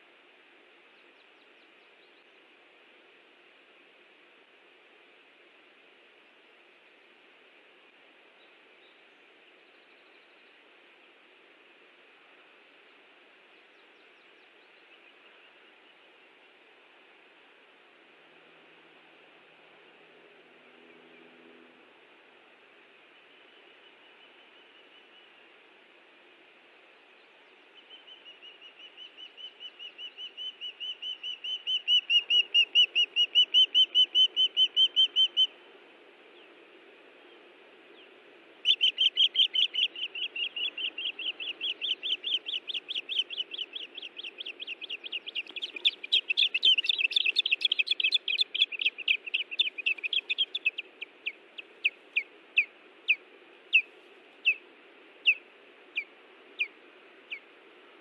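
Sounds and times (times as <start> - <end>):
ospreys whistled alarm chirps: 38.7 - 50.9.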